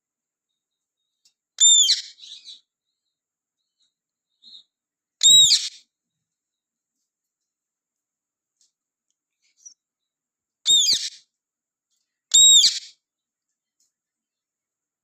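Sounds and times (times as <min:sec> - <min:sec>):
parakeet shrill calls: 0:01.6 - 0:02.6, 0:05.2 - 0:05.8, 0:10.7 - 0:11.2, 0:12.3 - 0:12.9.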